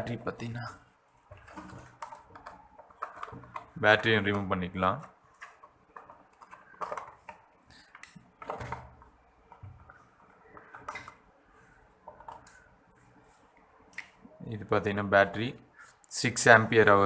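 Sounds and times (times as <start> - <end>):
plastic parts clicking and knocking: 1.2 - 12.9.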